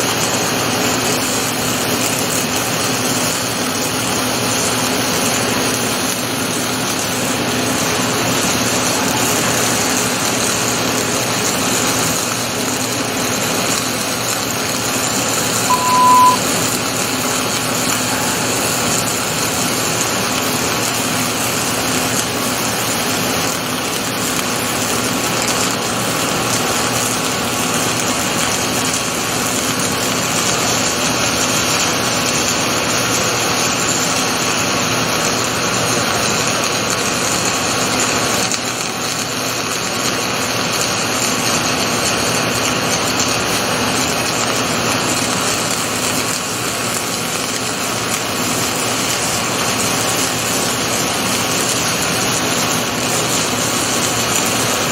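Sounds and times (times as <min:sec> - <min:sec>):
welding machine hiss and hum: 0:00.0 - 0:54.9
short high beep: 0:15.6 - 0:16.7.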